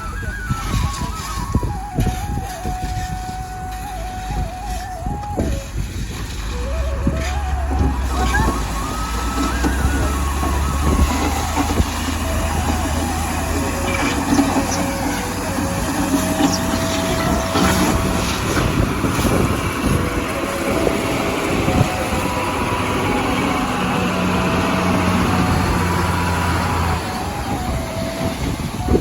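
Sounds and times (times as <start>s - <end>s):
diesel engine running: 0.0s - 29.0s.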